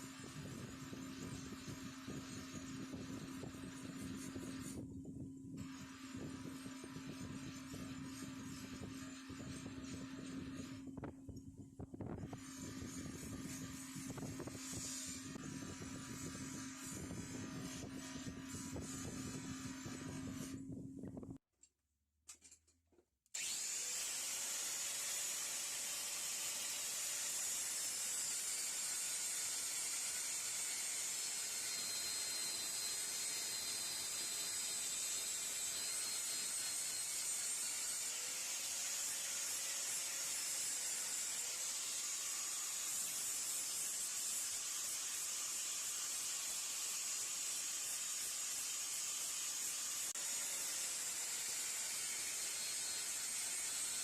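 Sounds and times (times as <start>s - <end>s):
power tool grinding metal: 0.0s - 4.8s, 5.6s - 10.9s, 12.1s - 20.7s, 23.4s - 54.0s
faint motor tone: 0.1s - 21.3s.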